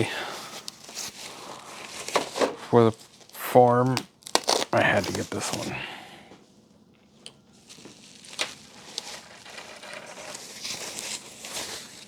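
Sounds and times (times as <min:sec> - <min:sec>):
soft rustling: 0:00.0 - 0:03.4, 0:07.5 - 0:12.0.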